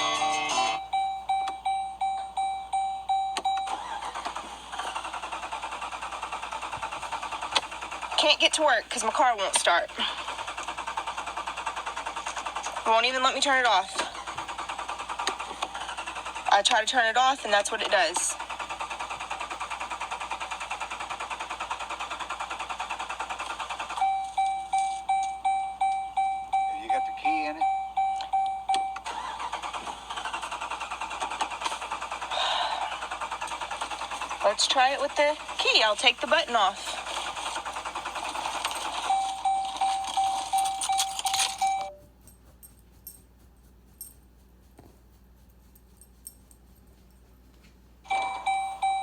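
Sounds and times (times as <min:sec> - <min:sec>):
dashboard warning chime: 0:00.0 - 0:04.4, 0:24.0 - 0:29.5, 0:38.6 - 0:42.2, 0:48.1 - 0:49.0
car engine cranking: 0:00.0 - 0:43.2, 0:48.1 - 0:49.0
rapid chattering beep: 0:23.9 - 0:29.5, 0:34.0 - 0:42.2.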